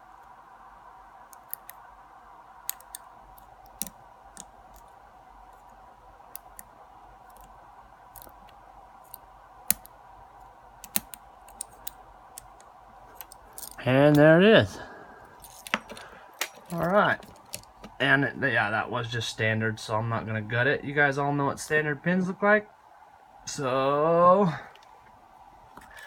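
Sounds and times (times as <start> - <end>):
faint steady hum: 0.0 - 26.0
lock pick clicking in padlock: 2.6 - 3.0, 10.8 - 13.8.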